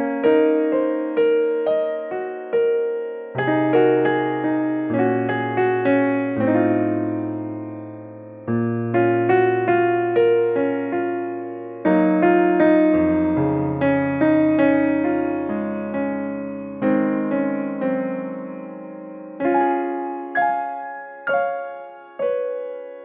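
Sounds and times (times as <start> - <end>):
gentle piano music: 0.0 - 23.0.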